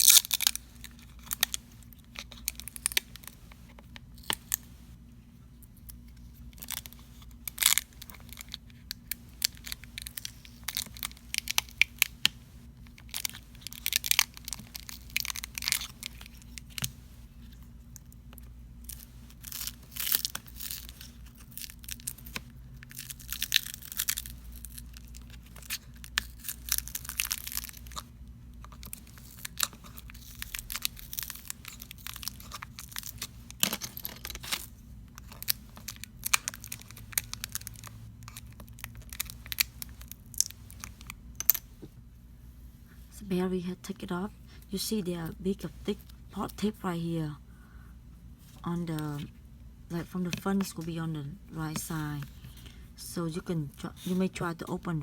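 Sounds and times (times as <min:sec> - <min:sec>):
adhesive tape tearing and crackling: 0:00.0 - 0:03.4, 0:12.8 - 0:16.9, 0:18.9 - 0:28.0, 0:28.6 - 0:41.0.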